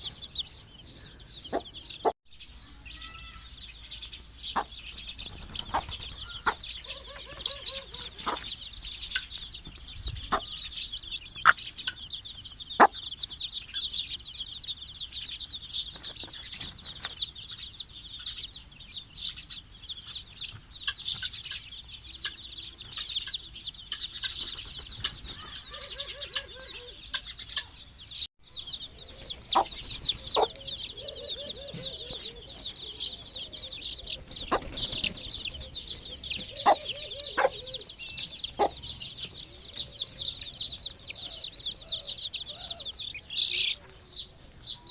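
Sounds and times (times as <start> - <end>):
chicks peeping: 0.0 - 44.9
chicken clucking: 1.3 - 2.1, 4.4 - 14.2, 20.1 - 27.8, 28.6 - 44.9.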